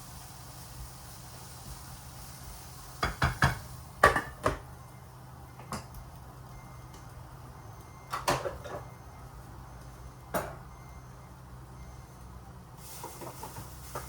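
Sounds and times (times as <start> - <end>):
kitchen knocks and clatter: 3.0 - 4.6.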